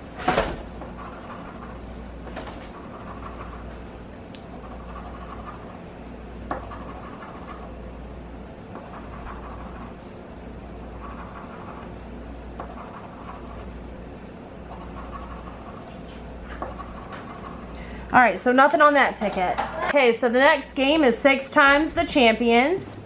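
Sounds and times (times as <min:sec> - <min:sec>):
lottery ticket being scratched: 0:00.9 - 0:01.9, 0:02.7 - 0:03.8, 0:04.5 - 0:05.9, 0:06.5 - 0:07.7, 0:08.8 - 0:10.0, 0:11.0 - 0:12.0, 0:12.6 - 0:13.8, 0:14.7 - 0:16.0, 0:16.6 - 0:17.8.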